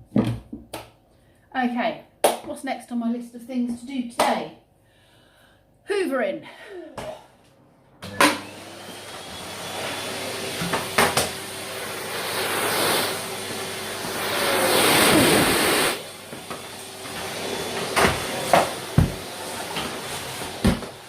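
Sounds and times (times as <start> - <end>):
vacuum cleaner running: 8.0 - 21.0.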